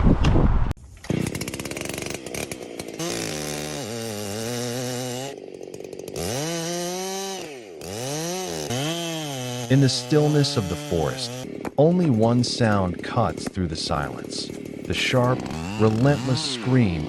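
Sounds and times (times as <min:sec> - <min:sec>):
chainsaw engine revving: 0:01.0 - 0:17.0.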